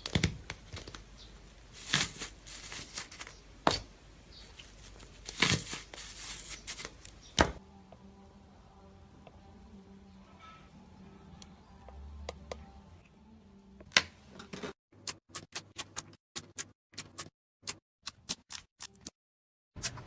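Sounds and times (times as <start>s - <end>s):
faint hum: 7.0s - 13.8s.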